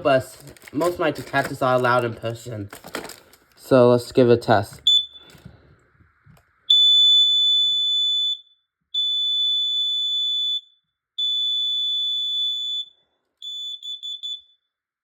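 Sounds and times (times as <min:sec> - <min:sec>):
smoke alarm beeps: 0:04.8 - 0:05.4, 0:06.7 - 0:14.7
smoke alarm chirps: 0:04.8 - 0:05.4, 0:06.7 - 0:14.7.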